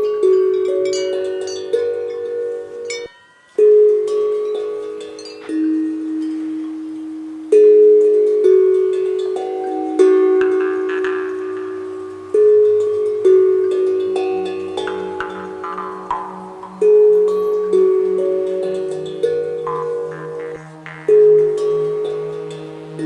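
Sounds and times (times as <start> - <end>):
chillout instrumental melody: 0.0 - 23.0
low bass line: 10.0 - 23.0.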